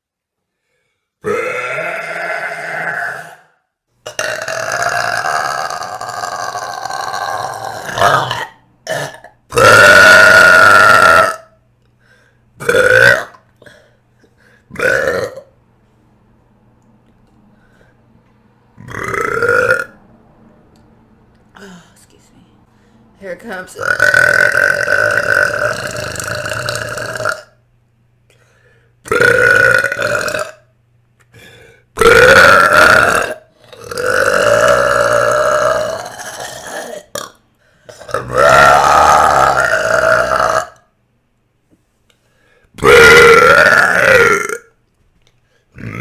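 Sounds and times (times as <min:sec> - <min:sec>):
woman belching loudly: 0:01.2 - 0:03.5, 0:04.1 - 0:11.6, 0:12.6 - 0:13.8, 0:14.7 - 0:15.5, 0:18.8 - 0:20.0, 0:23.8 - 0:27.6, 0:29.1 - 0:30.6, 0:32.0 - 0:40.9, 0:42.8 - 0:44.7, 0:45.8 - 0:46.0.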